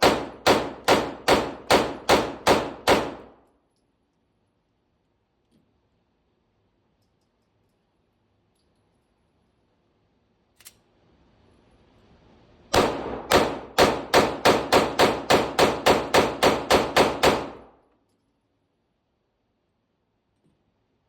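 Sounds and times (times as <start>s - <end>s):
pistol shots: 0.0s - 3.4s, 12.7s - 17.7s.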